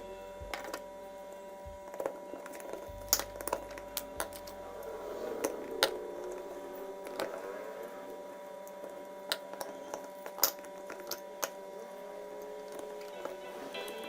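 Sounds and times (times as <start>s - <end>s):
faint steady hum: 0.0s - 14.0s
metal parts clicking and knocking: 1.9s - 4.5s, 9.3s - 11.6s.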